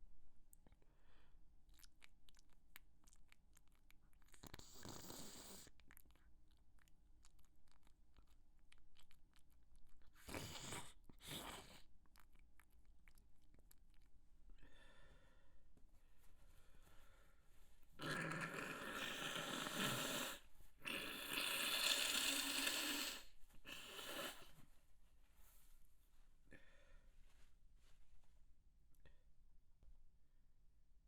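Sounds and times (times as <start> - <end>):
person breathing quietly: 14.6 - 17.7, 26.5 - 27.3.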